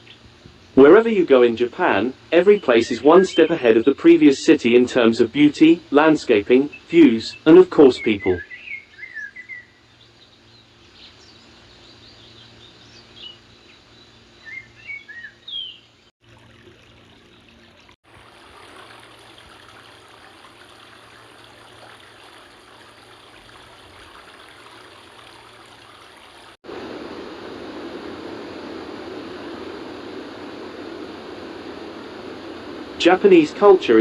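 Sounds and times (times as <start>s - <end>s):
small birds chirping: 6.6s - 16.1s
stream rushing: 18.1s - 34.0s.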